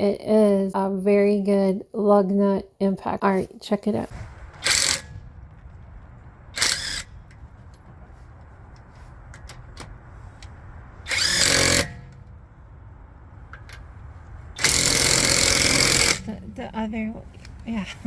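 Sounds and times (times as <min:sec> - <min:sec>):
impact wrench hammering: 0:11.1 - 0:12.0, 0:14.6 - 0:16.3.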